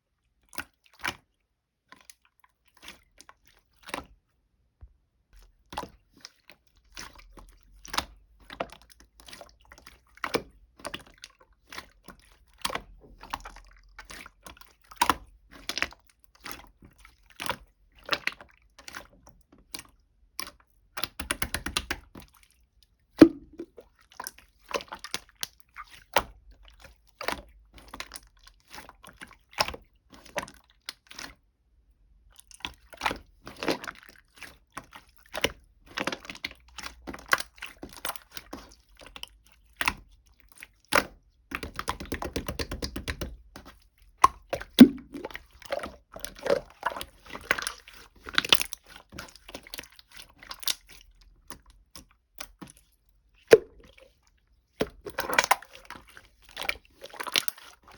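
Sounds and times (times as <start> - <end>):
clicks taps and crackles: 23.2 - 23.8, 41.6 - 45.4.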